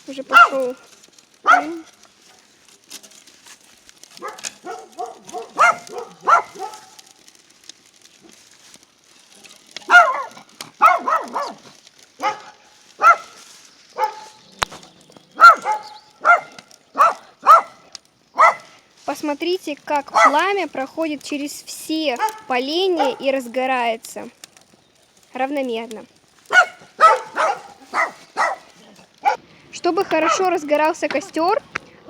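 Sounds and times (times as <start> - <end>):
dog barking high-pitched: 0.3 - 0.8, 1.4 - 1.9, 4.2 - 7.0, 9.9 - 11.6, 12.2 - 13.4, 14.0 - 14.4, 15.4 - 17.8, 18.4 - 18.7, 20.1 - 20.5, 22.2 - 23.3, 26.5 - 29.4, 30.1 - 30.5.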